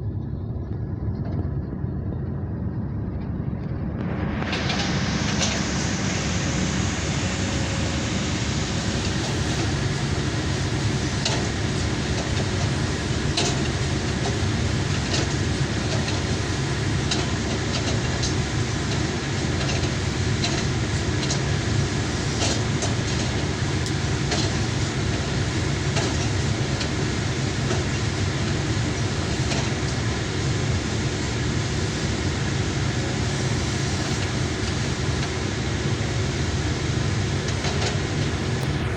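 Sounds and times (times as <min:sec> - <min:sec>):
excavator engine droning: 0:00.0 - 0:38.9.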